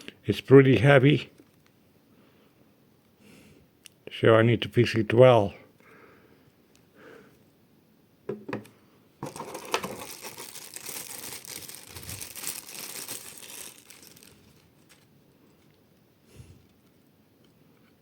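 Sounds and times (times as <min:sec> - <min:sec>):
packaging crinkling: 0:09.2 - 0:15.8.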